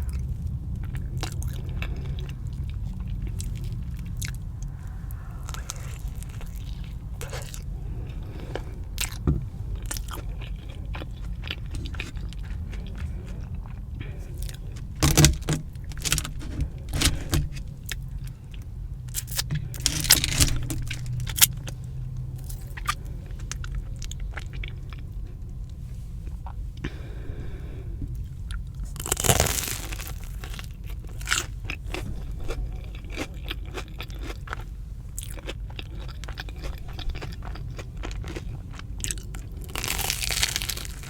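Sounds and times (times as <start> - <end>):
crunchy chewing and biting: 0.0 - 27.1, 28.4 - 41.0.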